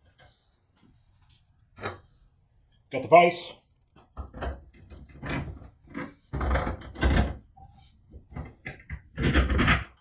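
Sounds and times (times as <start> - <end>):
vise clunking and scraping on wood: 1.8 - 2.2, 4.1 - 10.0.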